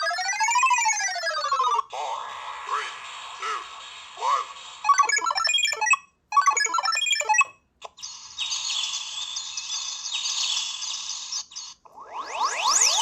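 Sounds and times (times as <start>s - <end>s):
buzzing rippling ringtone: 4.9s - 7.5s.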